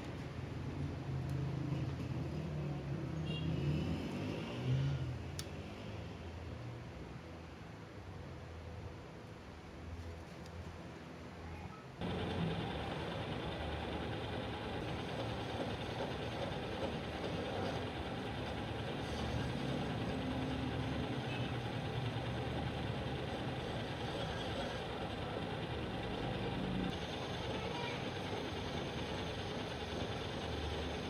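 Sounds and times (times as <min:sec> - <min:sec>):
machinery droning: 0:12.0 - 0:31.0.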